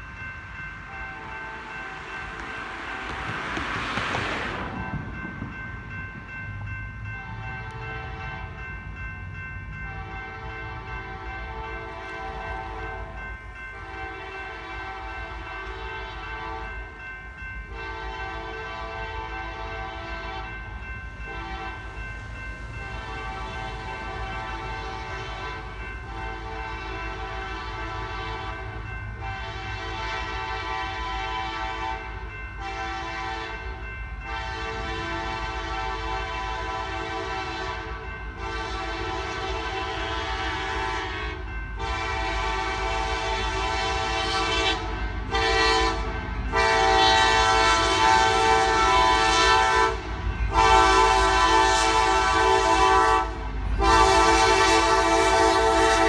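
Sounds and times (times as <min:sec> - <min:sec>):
locomotive air horn blasts: 0:24.9 - 0:33.5, 0:34.3 - 0:56.0.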